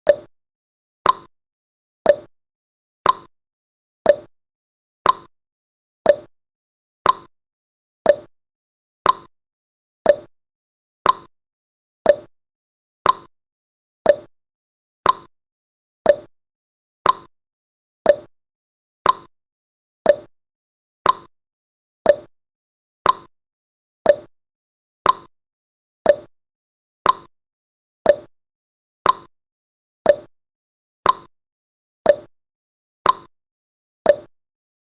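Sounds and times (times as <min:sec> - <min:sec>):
timer ticking: 0:00.0 - 0:00.3, 0:01.0 - 0:01.3, 0:02.1 - 0:02.3, 0:03.0 - 0:03.3, 0:04.1 - 0:04.3, 0:05.0 - 0:05.3, 0:06.1 - 0:06.3, 0:07.0 - 0:07.3, 0:08.1 - 0:08.3, 0:09.0 - 0:09.3, 0:10.0 - 0:10.3, 0:11.0 - 0:11.3, 0:12.0 - 0:12.3, 0:13.0 - 0:13.3, 0:14.0 - 0:14.3, 0:15.0 - 0:15.3, 0:16.1 - 0:16.3, 0:17.0 - 0:17.3, 0:18.1 - 0:18.3, 0:19.0 - 0:19.3, 0:20.1 - 0:20.3, 0:21.0 - 0:21.3, 0:22.1 - 0:22.3, 0:23.0 - 0:23.3, 0:24.1 - 0:24.3, 0:25.0 - 0:25.3, 0:26.0 - 0:26.3, 0:27.0 - 0:27.3, 0:28.1 - 0:28.3, 0:29.0 - 0:29.3, 0:30.1 - 0:30.3, 0:31.0 - 0:31.3, 0:32.1 - 0:32.3, 0:33.0 - 0:33.3, 0:34.1 - 0:34.3.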